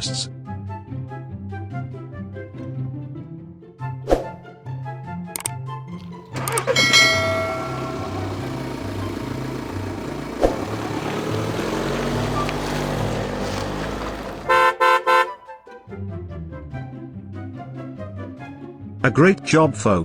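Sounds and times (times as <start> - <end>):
toy van engine and road noise: 5.4 - 15.3
short horn toots: 14.3 - 15.4.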